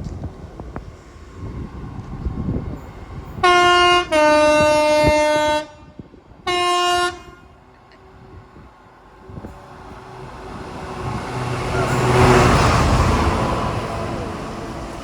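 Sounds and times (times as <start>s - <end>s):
train two-tone horn: 3.4s - 7.6s.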